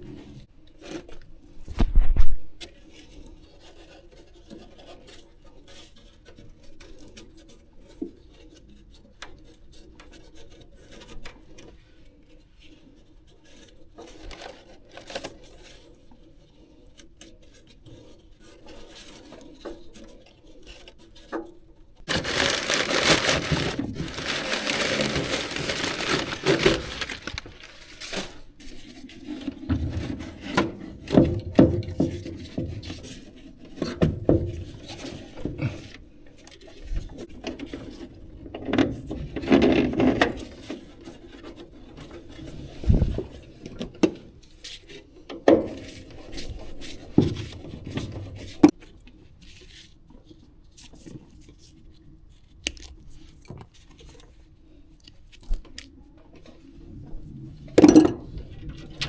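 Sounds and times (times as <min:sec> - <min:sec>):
rubbing and scraping: 0:22.1 - 0:30.9.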